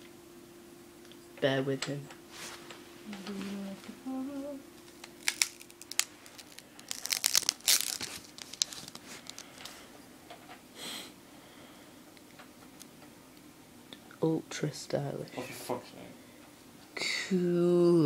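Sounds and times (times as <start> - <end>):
crinkling handling noise: 4.7 - 9.9.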